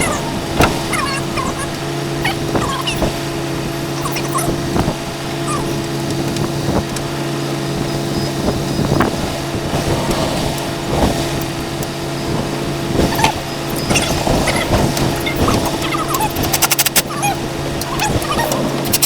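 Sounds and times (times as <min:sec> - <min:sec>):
engine hum: 0:00.0 - 0:19.0.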